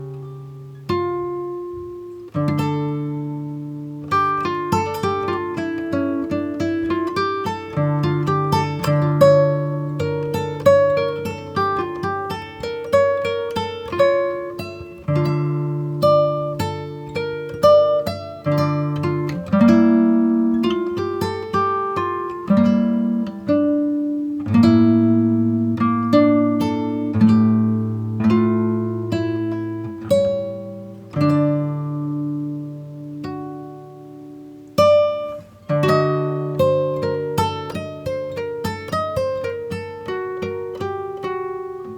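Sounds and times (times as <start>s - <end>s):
plucked guitar melody: 0.0s - 41.9s.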